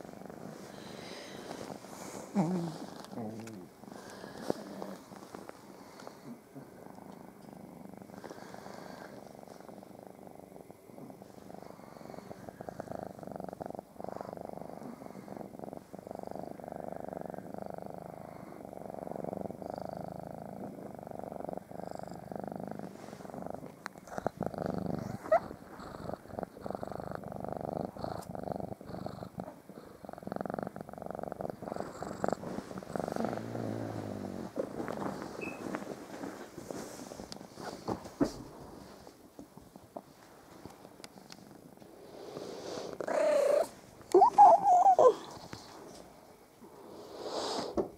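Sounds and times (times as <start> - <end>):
cat purring: 0.0 - 47.9
sharp rising squeak: 35.4 - 35.6.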